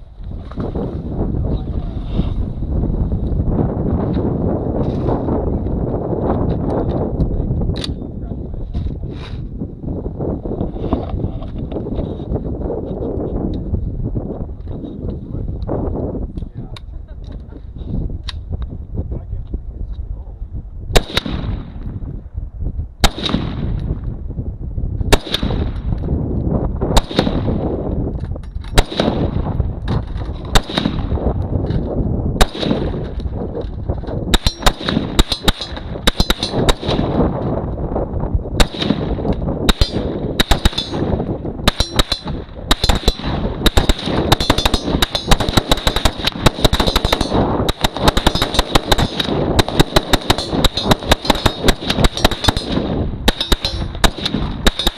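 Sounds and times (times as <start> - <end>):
gunshots: 21.0 - 21.8, 23.0 - 23.8, 25.1 - 25.9, 27.0 - 27.7, 28.8 - 29.6, 30.5 - 31.3, 32.4 - 33.2, 34.3 - 37.3, 38.6 - 54.9.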